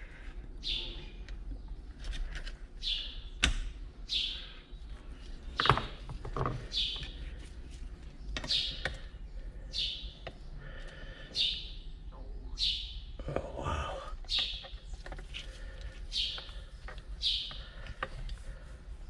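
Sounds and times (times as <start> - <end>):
songbird chirping: 0.6 - 1.8, 2.8 - 3.4, 4.0 - 6.0, 6.6 - 7.4, 8.2 - 14.9, 15.6 - 17.9.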